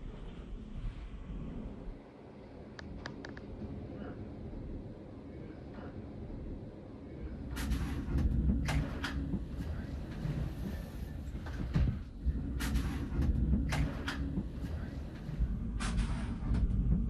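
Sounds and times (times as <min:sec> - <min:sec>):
sharp clicks and knocks: 0:11.4 - 0:17.0.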